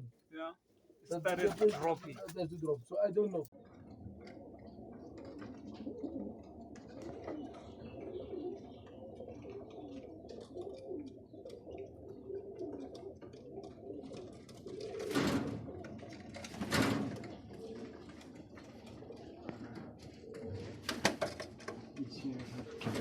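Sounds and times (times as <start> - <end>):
rustling bursts: 1.1 - 3.5
pigeons cooing: 1.1 - 23.0.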